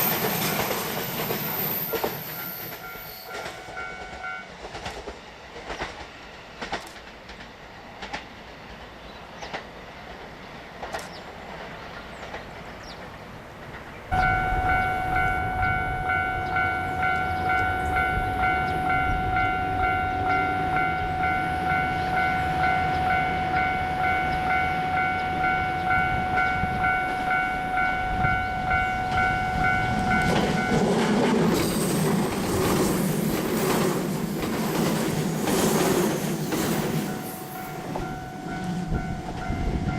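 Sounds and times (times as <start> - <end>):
level crossing warning bell: 0.0 - 4.5, 14.1 - 32.4, 36.1 - 39.9
train passing over rails: 0.0 - 39.9.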